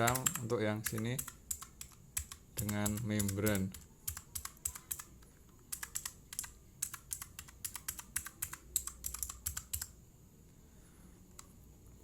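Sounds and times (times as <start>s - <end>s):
mechanical keyboard keys clacking: 0.0s - 5.1s, 5.7s - 9.9s.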